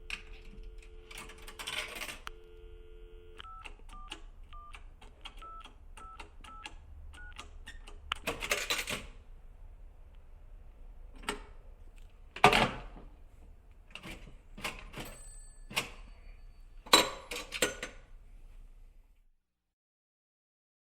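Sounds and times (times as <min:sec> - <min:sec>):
telephone bell clattering: 0:00.0 - 0:02.6, 0:15.0 - 0:17.0.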